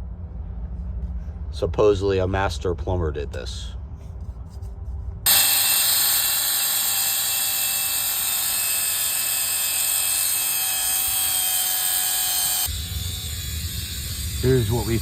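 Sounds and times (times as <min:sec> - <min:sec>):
power tool high-pitched whir: 0:05.3 - 0:15.0.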